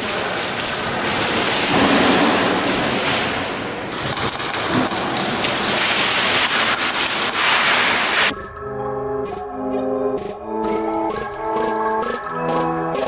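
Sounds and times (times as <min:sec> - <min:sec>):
airsoft gunfire: 0:00.0 - 0:08.3
pellets striking walls: 0:00.0 - 0:08.3, 0:10.6 - 0:13.0.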